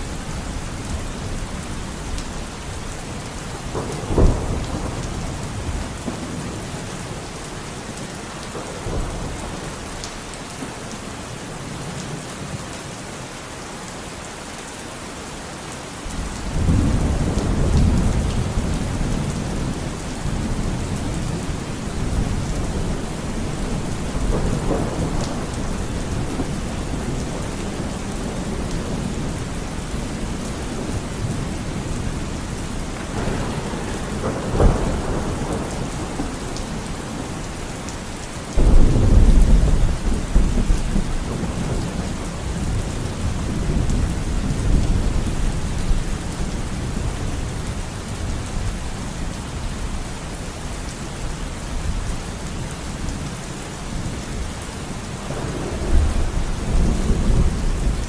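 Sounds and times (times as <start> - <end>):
thunder rumbling: 0.0 - 10.7, 16.1 - 48.8, 54.0 - 58.0
steady rain: 0.0 - 58.0
sharp thunderclap: 3.5 - 7.1, 16.4 - 37.8, 38.6 - 45.9, 55.2 - 58.0.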